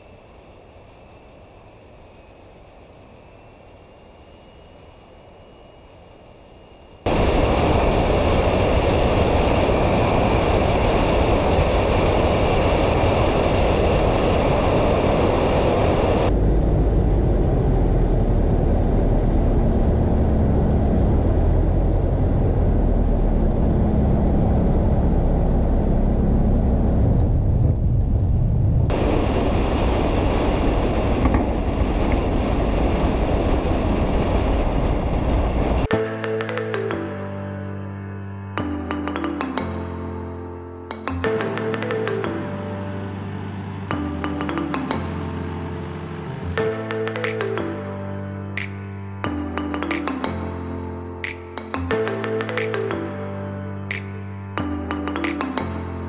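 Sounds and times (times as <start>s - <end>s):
light aircraft rumbling: 7.1s - 35.9s, 41.3s - 46.7s.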